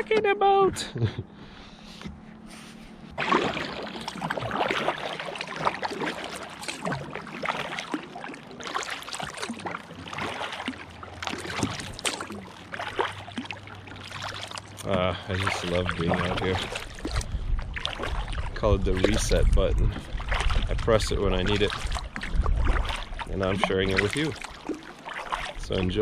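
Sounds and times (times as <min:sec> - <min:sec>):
paddle splashing in water: 0:01.8 - 0:26.0.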